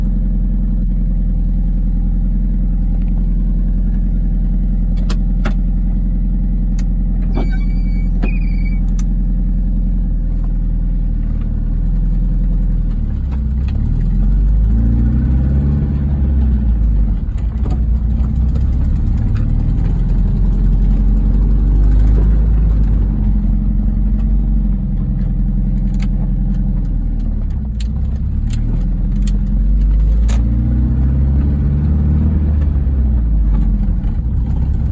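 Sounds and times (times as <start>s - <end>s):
car engine idling and revving: 0.0s - 34.9s
exhaust leak ticking and squealing: 7.2s - 9.3s.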